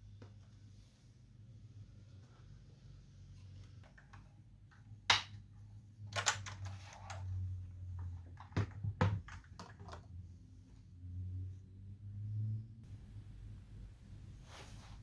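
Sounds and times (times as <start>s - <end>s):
steady low hum: 10.4s - 15.0s.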